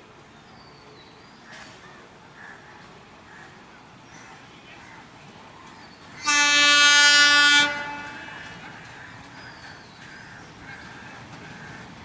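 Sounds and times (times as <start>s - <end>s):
diesel locomotive horn blast: 6.2s - 8.5s.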